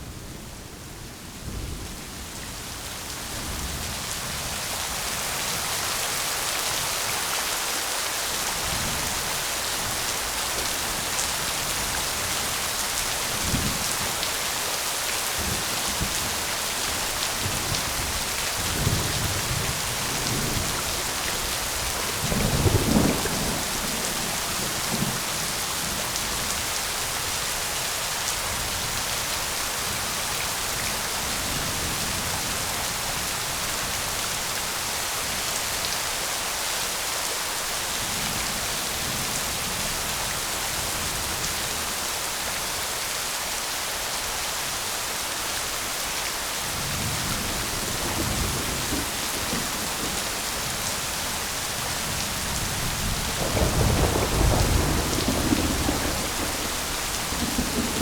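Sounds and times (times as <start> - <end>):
rain hissing: 46.6 - 58.0
thunder rumbling: 52.3 - 58.0.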